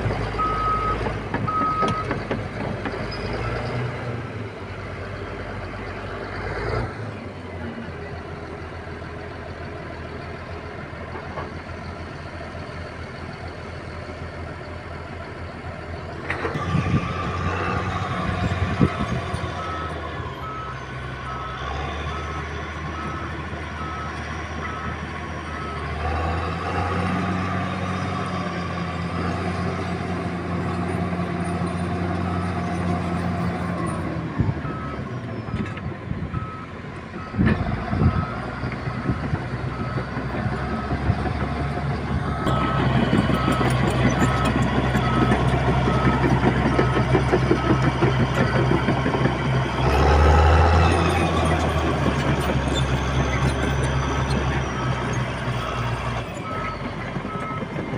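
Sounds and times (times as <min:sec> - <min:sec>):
diesel machine engine running: 0:00.0 - 0:57.9
reversing alarm beeping: 0:00.3 - 0:02.2, 0:16.6 - 0:28.5, 0:36.3 - 0:49.0, 0:49.8 - 0:57.8.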